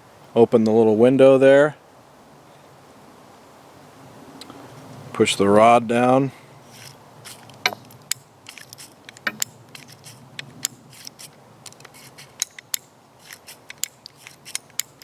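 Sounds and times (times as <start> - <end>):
revolver metallic clicks: 6.8 - 15.0.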